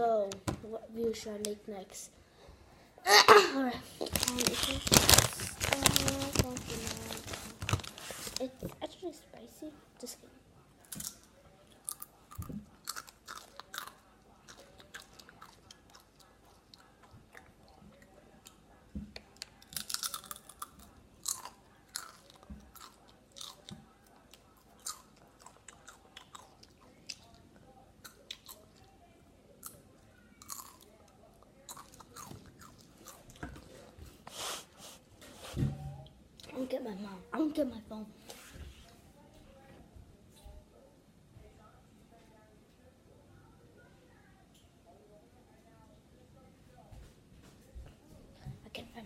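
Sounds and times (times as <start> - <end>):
chips being crunched: 4.1 - 8.0.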